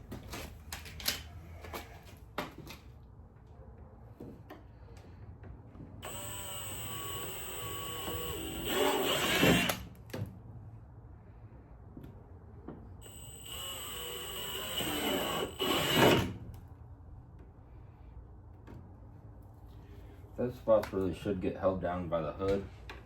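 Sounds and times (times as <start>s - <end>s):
rivet gun motor whine: 6.0s - 9.9s, 13.0s - 16.4s.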